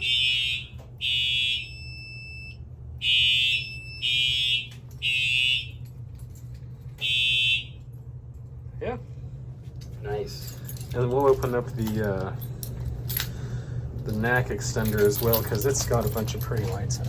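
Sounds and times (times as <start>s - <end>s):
fire alarm horn blasts: 0.0s - 6.0s, 7.0s - 8.0s
steady low hum: 0.0s - 17.0s.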